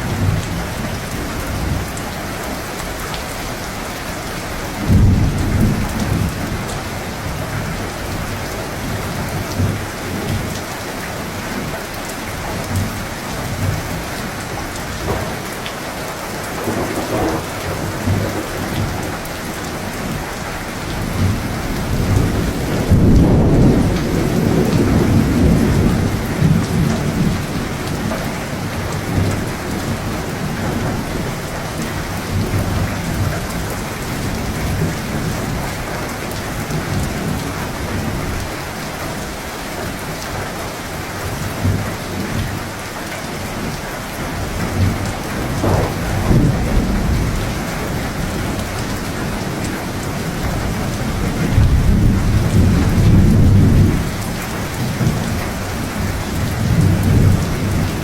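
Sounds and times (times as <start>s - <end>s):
heavy rain: 0.0s - 58.0s
rolling thunder: 12.6s - 31.3s, 44.4s - 58.0s.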